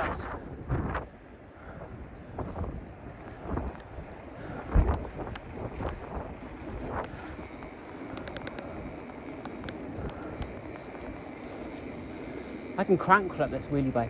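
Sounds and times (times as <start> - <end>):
wind buffeting microphone: 0.0 - 14.0
faint clicks: 3.2 - 4.0, 4.6 - 12.5.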